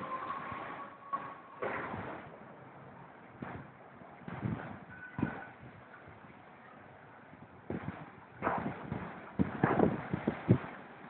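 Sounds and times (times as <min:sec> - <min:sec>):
gusty wind buffeting microphone: 0:03.2 - 0:06.4, 0:07.2 - 0:11.0.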